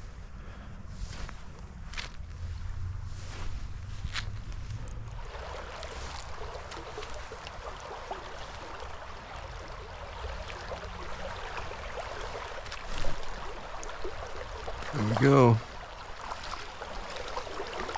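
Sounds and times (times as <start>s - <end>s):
creek water running: 3.6s - 17.9s.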